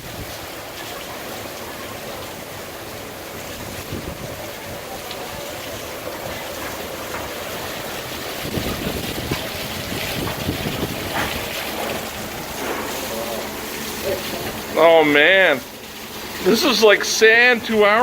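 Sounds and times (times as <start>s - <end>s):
rain: 0.0s - 18.0s
wind: 0.0s - 18.0s
gusts buffeting microphone: 3.5s - 5.5s, 7.8s - 12.6s.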